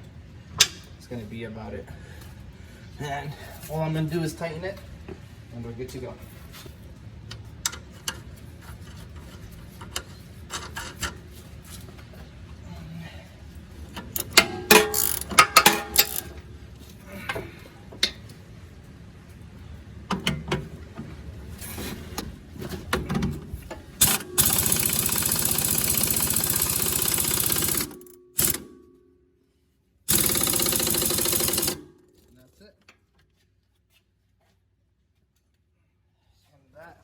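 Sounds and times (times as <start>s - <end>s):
tools knocking and clanking: 13.9s - 16.5s, 20.1s - 21.2s, 22.2s - 24.6s
impact wrench running: 14.1s - 16.5s, 24.0s - 28.8s, 30.1s - 31.9s.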